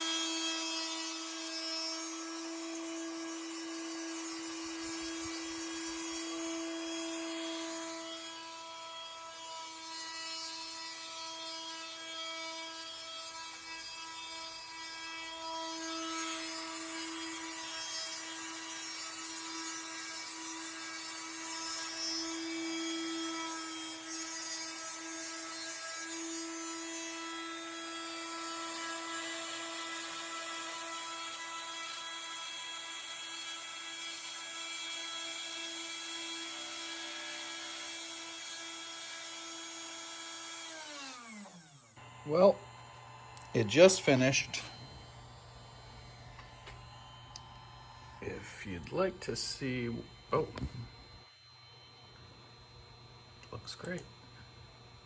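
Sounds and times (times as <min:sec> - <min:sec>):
router cutting wood: 0:00.0 - 0:51.9
spindle whine: 0:42.0 - 0:52.6.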